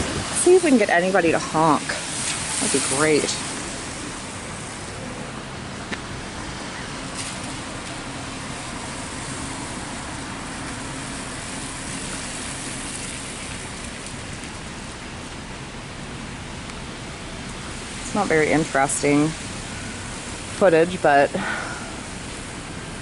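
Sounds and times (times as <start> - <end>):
wind noise on microphone: 0.0 - 11.6
road traffic passing: 0.0 - 23.0.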